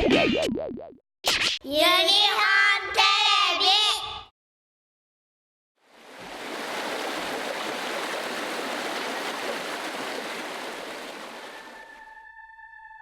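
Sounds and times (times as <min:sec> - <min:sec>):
rushing white water: 0:05.9 - 0:11.8.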